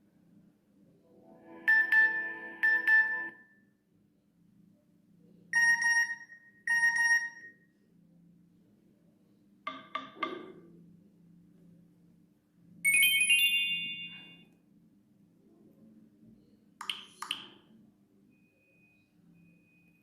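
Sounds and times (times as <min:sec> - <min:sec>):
phone alert tones: 0:01.6 - 0:03.5.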